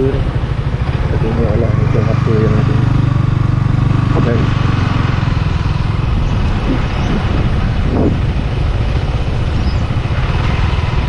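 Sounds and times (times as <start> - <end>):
motorcycle engine drone: 0.0 - 11.0
wind rush: 3.2 - 11.0.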